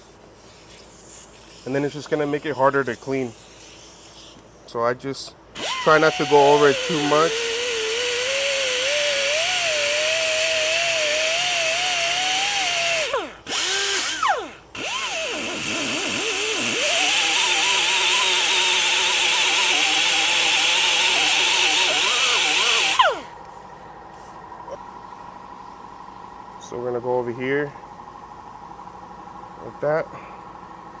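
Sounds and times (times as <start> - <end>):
grinder abrading rubber tire: 0.0 - 4.4, 5.2 - 23.4.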